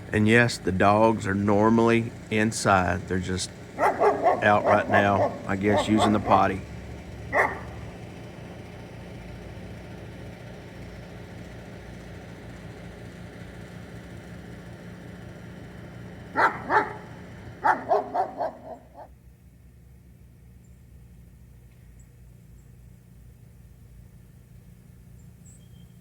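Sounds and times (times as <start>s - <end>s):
steady low hum: 0.0s - 26.0s
dog barking: 3.8s - 6.6s, 7.3s - 8.0s, 16.3s - 19.1s.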